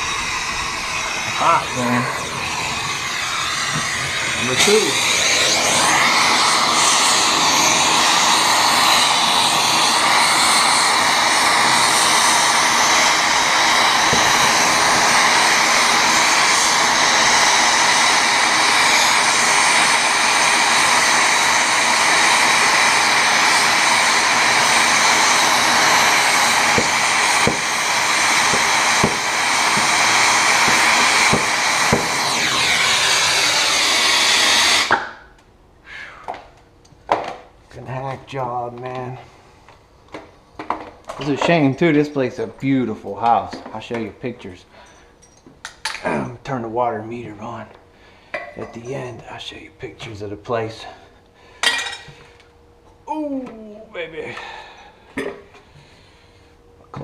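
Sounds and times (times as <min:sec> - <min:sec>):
torch burning with loud hiss: 0:00.0 - 0:35.3, 0:37.9 - 0:44.6.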